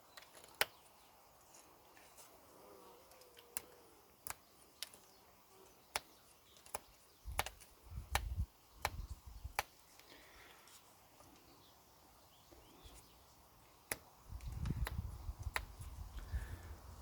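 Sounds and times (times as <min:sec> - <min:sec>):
knife blade carving wood clicks: 0:03.4 - 0:05.1, 0:05.9 - 0:09.7, 0:13.8 - 0:15.8.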